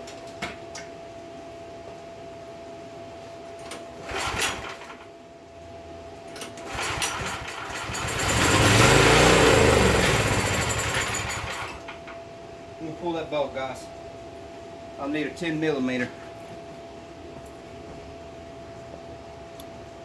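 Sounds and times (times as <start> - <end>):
recoil starter pulls: 4.0 - 5.0, 6.6 - 12.0
small gas engine running: 4.0 - 5.0, 6.6 - 12.0.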